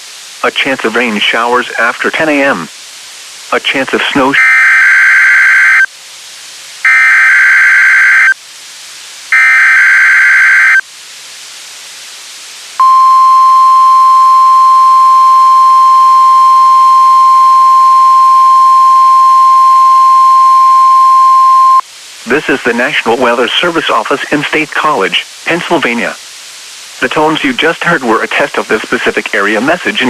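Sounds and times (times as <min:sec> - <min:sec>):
digital data bursts: 0:03.6 - 0:05.9, 0:06.8 - 0:08.4, 0:09.3 - 0:10.8
steady warning alarm tone: 0:04.2 - 0:05.9, 0:06.9 - 0:08.4, 0:09.3 - 0:10.8, 0:12.8 - 0:21.8.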